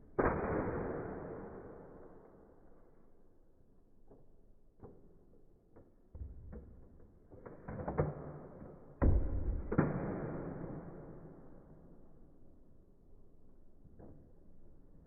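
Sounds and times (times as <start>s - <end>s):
toy blaster shots and knocks: 6.2s - 11.4s.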